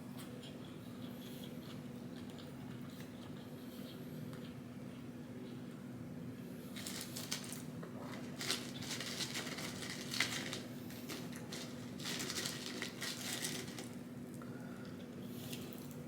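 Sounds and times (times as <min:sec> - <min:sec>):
food chewed and crunched: 0:00.2 - 0:03.7, 0:06.7 - 0:14.4.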